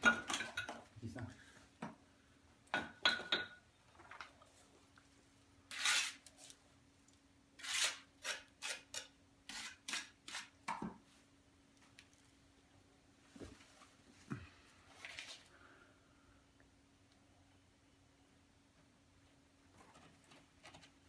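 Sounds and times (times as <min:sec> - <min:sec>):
faint steady hum: 0:00.0 - 0:07.6, 0:10.6 - 0:21.0
mortar scraping: 0:05.7 - 0:06.6, 0:07.6 - 0:10.7.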